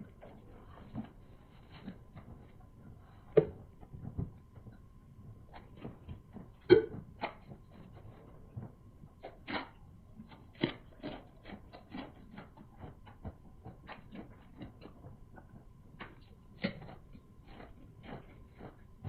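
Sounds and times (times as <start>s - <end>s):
chewing and mouth smacking: 5.5s - 19.0s.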